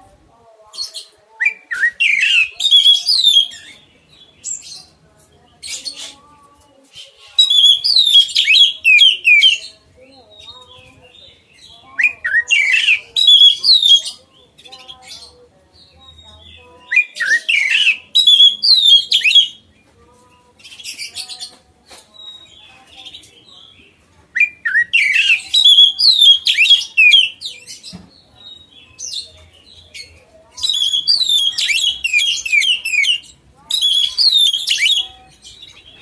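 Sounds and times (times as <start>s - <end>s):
bird singing whistled notes: 1.4s - 4.6s, 7.4s - 9.6s, 11.6s - 14.2s, 16.8s - 19.6s, 24.4s - 27.9s, 30.6s - 36.0s.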